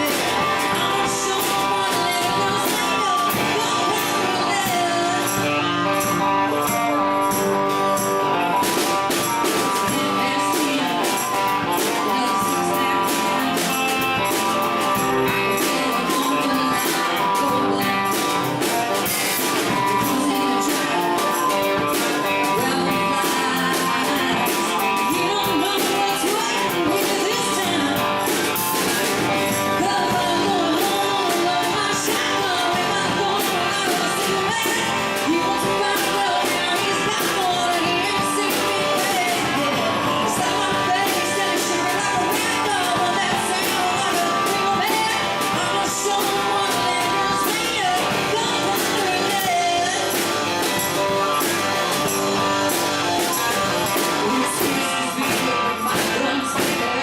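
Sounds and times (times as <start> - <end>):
country-rock band playing: 0.0 - 57.0
person singing: 0.0 - 57.0.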